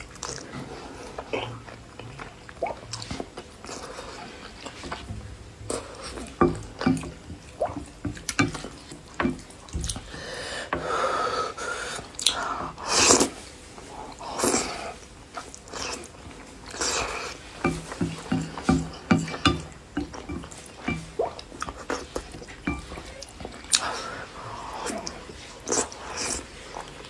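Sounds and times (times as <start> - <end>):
wet chewing and lip-smacking: 12.1 - 12.4.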